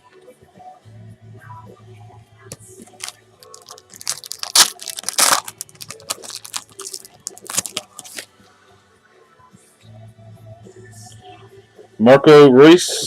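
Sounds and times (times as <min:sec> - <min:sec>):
cards rustling: 0:03.0 - 0:08.3
foil wrapper crinkling: 0:03.0 - 0:08.3.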